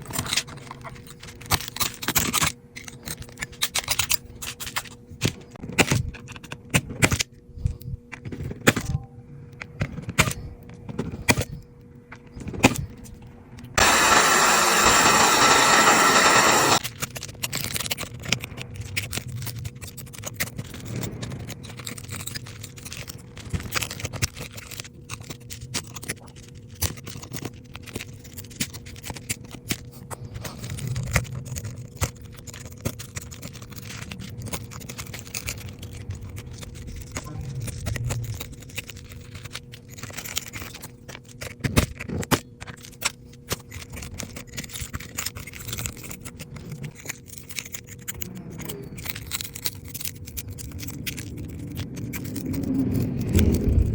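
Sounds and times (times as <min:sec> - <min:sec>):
faint hum: 0:00.0 - 0:53.9
hand tools scraping and clicking: 0:13.8 - 0:20.5.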